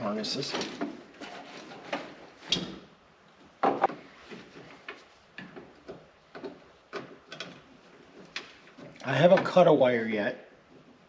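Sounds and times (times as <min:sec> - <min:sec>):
clicks and knocks of car parts: 0:03.6 - 0:09.6.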